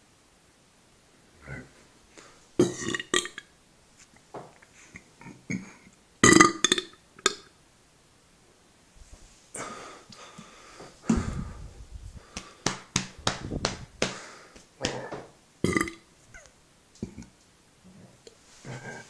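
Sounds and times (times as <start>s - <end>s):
burps: 2.6s - 3.5s, 5.2s - 7.4s, 14.8s - 16.1s, 17.0s - 17.3s
person breathing hard and wheezing: 9.5s - 12.9s, 14.0s - 15.2s.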